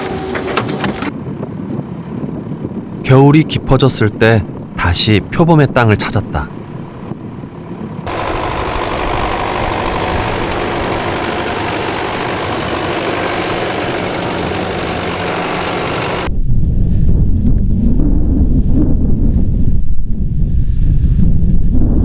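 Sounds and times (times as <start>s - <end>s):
wind rumble on microphone: 0.8s - 3.1s, 16.3s - 22.0s
motor vehicle engine: 6.5s - 16.3s.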